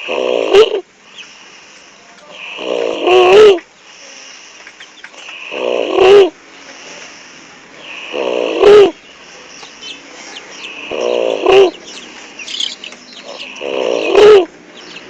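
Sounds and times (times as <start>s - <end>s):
heavy rattling snores: 0.0s - 0.8s, 2.4s - 3.6s, 5.4s - 6.3s, 7.8s - 8.9s, 10.8s - 11.7s, 13.4s - 14.5s
birds chirping faintly: 0.0s - 15.0s.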